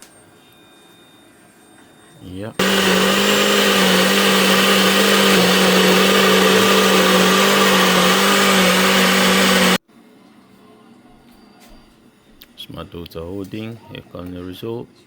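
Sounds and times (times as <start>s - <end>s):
electric blender running: 2.6s - 9.8s.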